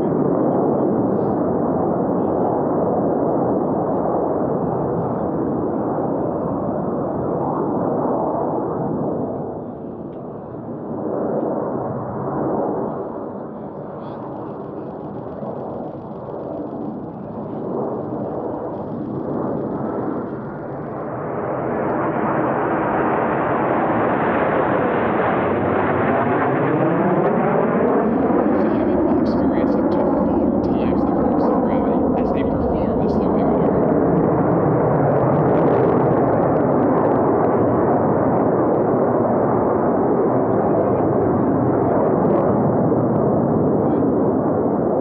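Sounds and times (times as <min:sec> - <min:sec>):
jet noise: 0:00.0 - 0:45.0.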